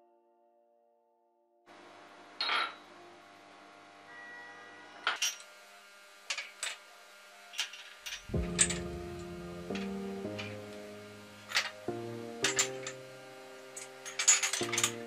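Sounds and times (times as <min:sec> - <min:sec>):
kitchenware clinking and clattering: 0:02.4 - 0:02.8, 0:13.8 - 0:15.0
kitchenware clinks and taps: 0:02.4 - 0:02.8.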